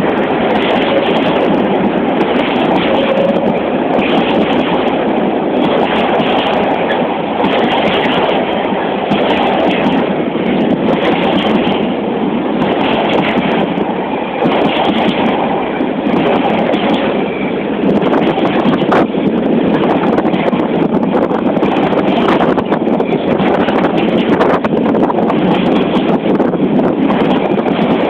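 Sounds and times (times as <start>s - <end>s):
diesel locomotive engine rumbling: 0.0s - 28.0s.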